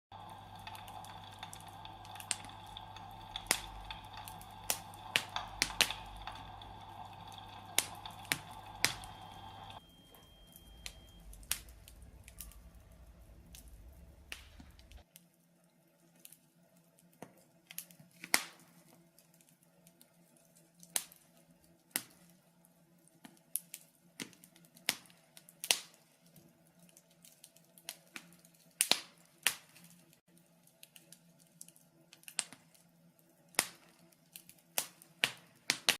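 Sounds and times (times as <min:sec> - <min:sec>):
steady hum: 0:00.1 - 0:15.0
wood fire crackling: 0:00.1 - 0:35.9.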